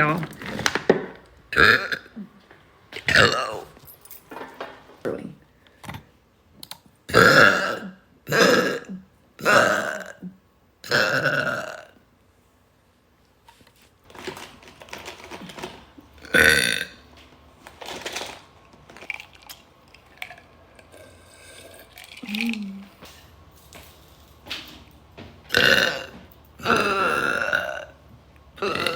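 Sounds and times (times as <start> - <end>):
woman burping loudly: 1.6 - 2.4, 3.0 - 3.7, 7.1 - 12.0, 16.2 - 17.0, 20.9 - 23.0, 25.5 - 28.0, 28.6 - 28.9.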